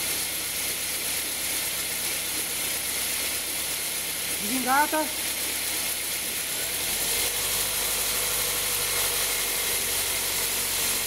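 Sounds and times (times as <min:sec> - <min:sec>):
steady hum: 0:04.3 - 0:11.0.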